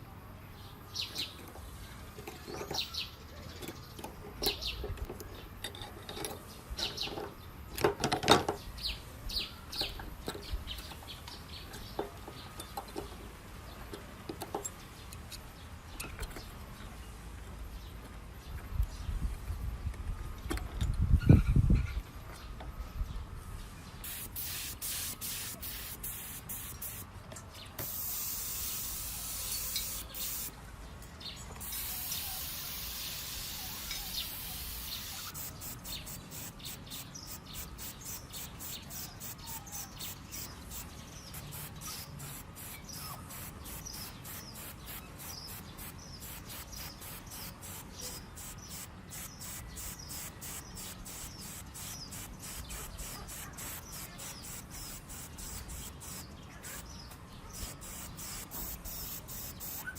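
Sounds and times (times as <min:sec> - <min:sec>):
paint spray hissing: 0:24.0 - 0:27.1, 0:27.8 - 0:30.6, 0:31.6 - 0:59.9.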